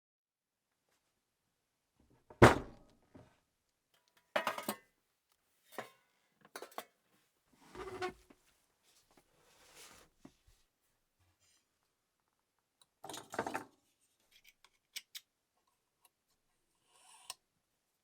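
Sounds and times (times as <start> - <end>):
metal tools clinking and rattling: 4.4 - 4.8.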